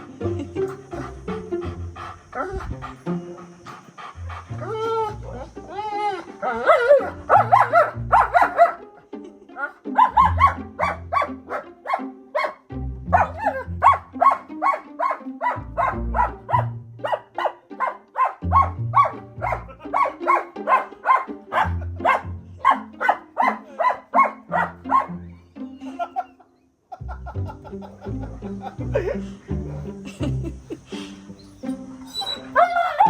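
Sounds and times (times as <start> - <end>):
background music with bass: 0.0 - 3.5, 4.2 - 8.8, 10.0 - 11.7, 12.6 - 14.6, 15.4 - 17.3, 18.4 - 25.9, 27.0 - 33.0
dog barking: 6.4 - 8.9, 9.6 - 25.2, 32.1 - 33.0.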